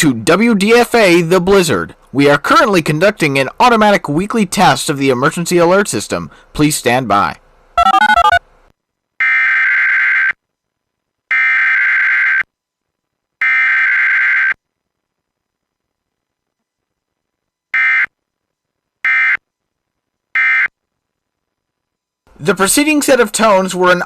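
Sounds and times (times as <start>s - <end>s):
two-tone warbling data bursts: 7.8s - 8.4s.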